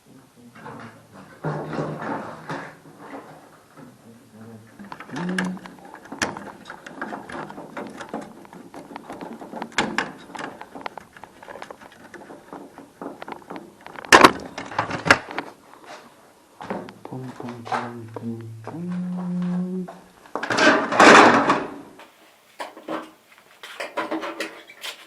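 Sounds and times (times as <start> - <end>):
tools and panels clicking and rattling: 0.6 - 4.0, 4.8 - 16.0, 20.3 - 25.0.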